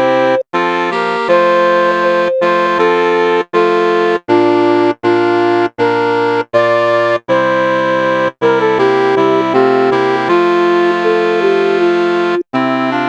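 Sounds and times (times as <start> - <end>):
wind quintet playing chords: 0.0 - 13.0.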